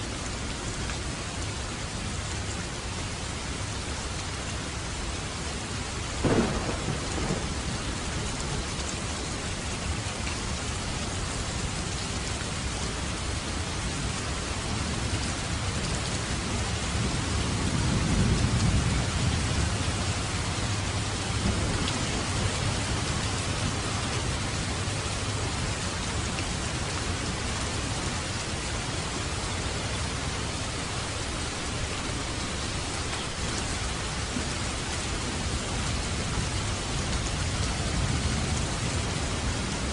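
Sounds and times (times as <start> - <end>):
heavy rain: 0.0 - 39.9
sharp thunderclap: 6.2 - 7.7
low thunder rumble: 6.2 - 9.1, 16.4 - 25.9.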